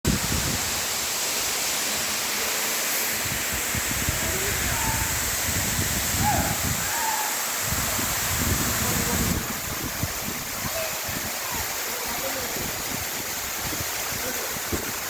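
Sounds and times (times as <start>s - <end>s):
wind rumbling on microphone: 0.1s - 0.8s, 3.2s - 7.0s, 7.6s - 11.7s, 12.4s - 15.0s
waterfall roaring: 0.1s - 15.0s.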